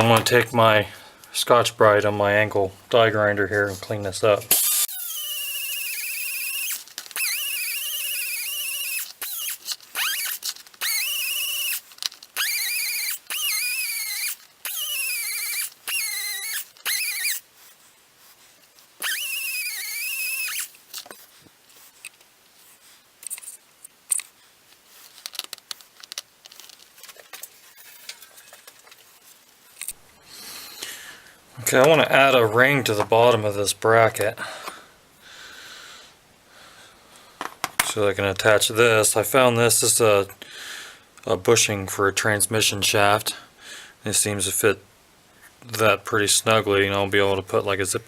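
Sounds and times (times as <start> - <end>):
die grinder whining: 4.5 - 17.4, 19.0 - 20.7
faint clicks and handling: 11.7 - 12.5, 23.2 - 30.0.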